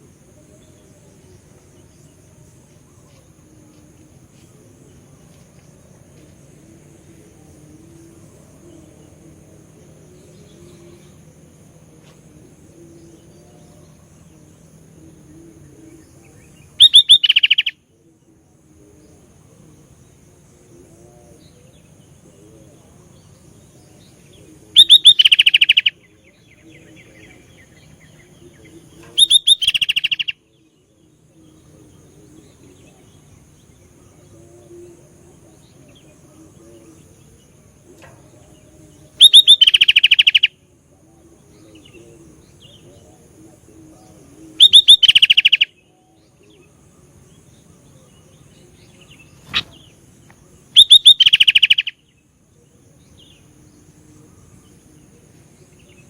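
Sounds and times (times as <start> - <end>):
bird chattering chirps: 16.8 - 17.8, 24.8 - 25.9, 27.1 - 30.4, 39.2 - 40.5, 44.6 - 45.7, 49.0 - 49.9, 50.8 - 52.0.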